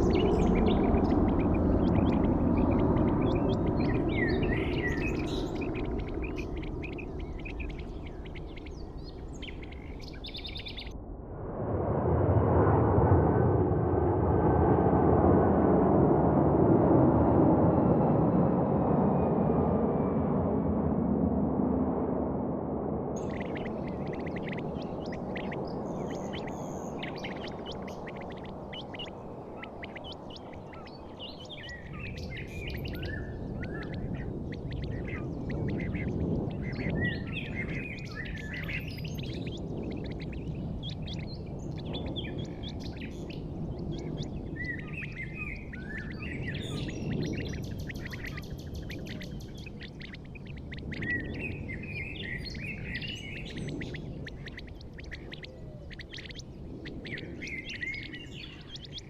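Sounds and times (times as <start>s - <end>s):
birds chirping: 0.0s - 11.0s, 23.2s - 59.0s
steady low rumble: 0.0s - 59.0s.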